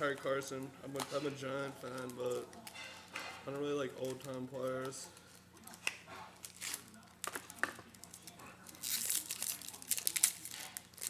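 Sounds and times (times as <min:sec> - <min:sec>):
card pack wrapper crinkling: 0:06.4 - 0:11.0.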